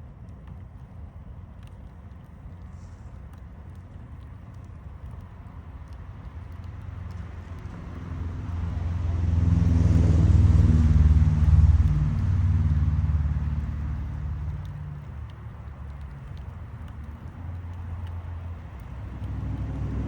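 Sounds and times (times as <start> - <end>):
vehicle passing by: 6.7 - 20.0.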